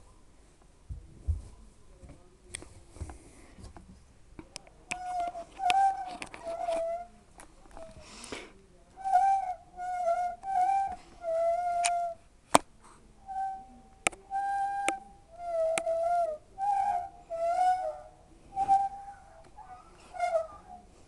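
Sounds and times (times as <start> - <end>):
washing machine bearings squealing: 13.3 - 20.9.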